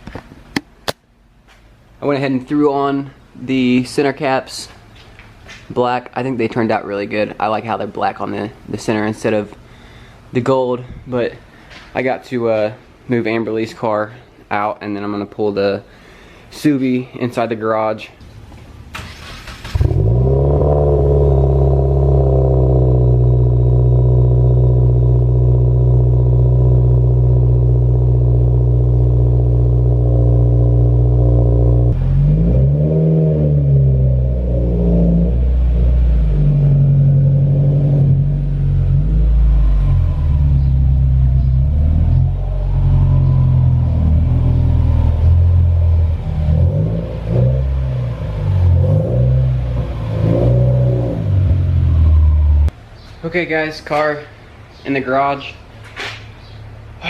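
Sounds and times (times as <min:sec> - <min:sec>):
car engine starting and idling: 0:18.3 - 0:52.8
car engine revving: 0:19.0 - 0:52.8.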